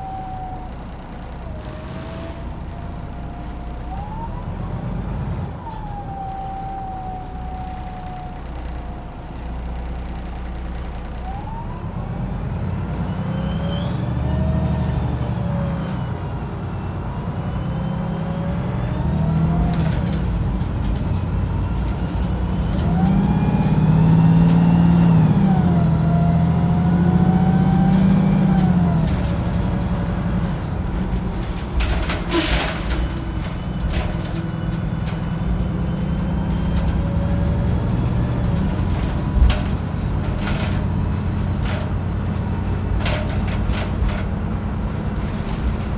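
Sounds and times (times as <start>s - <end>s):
bus engine and driveline: 0.0s - 45.9s
clicks and rattles: 27.8s - 45.9s.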